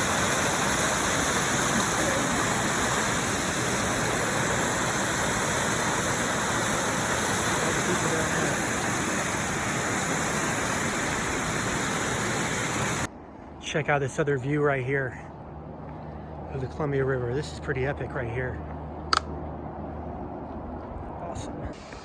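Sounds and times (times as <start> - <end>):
waterfall rushing: 0.0 - 13.1.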